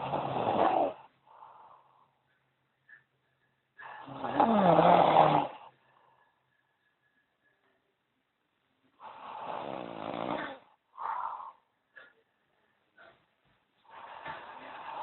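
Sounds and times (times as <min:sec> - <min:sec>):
man snoring: 0:00.0 - 0:01.1, 0:04.0 - 0:05.7, 0:09.0 - 0:10.6
faint breath: 0:01.2 - 0:04.3, 0:05.6 - 0:07.7, 0:10.4 - 0:15.0.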